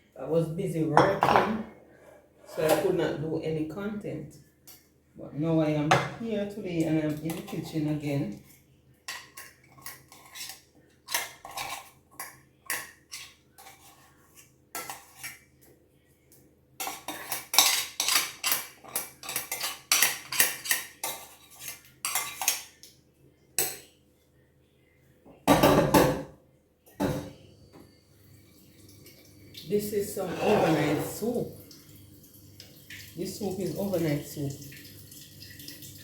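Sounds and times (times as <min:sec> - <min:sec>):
pots and pans clattering: 0:25.5 - 0:26.3.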